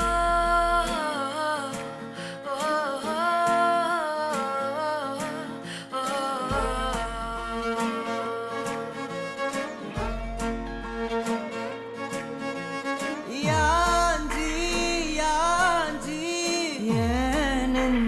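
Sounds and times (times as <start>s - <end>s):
deep bass notes: 0.0s - 1.0s, 6.5s - 7.8s, 13.5s - 16.2s, 17.0s - 18.0s.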